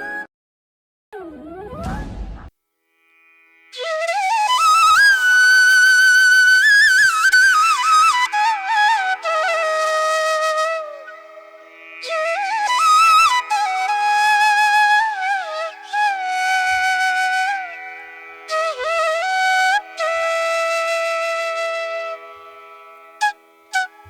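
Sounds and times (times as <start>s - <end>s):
flute melody: 3.8s - 24.0s.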